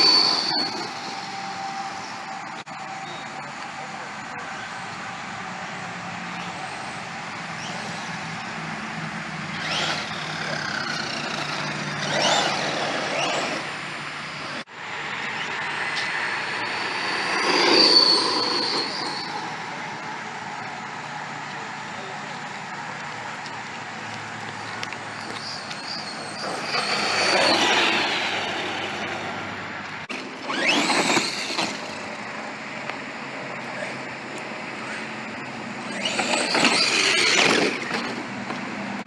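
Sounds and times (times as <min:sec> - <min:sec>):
tyre and ground noise: 0:00.0 - 0:39.0
electric motor whining: 0:06.4 - 0:14.6, 0:25.2 - 0:32.2, 0:34.8 - 0:38.2.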